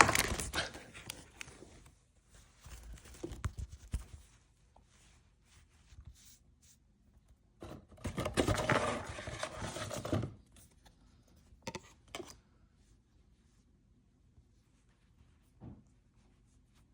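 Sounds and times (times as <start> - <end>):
packaging crinkling and rustling: 0.0 - 1.8.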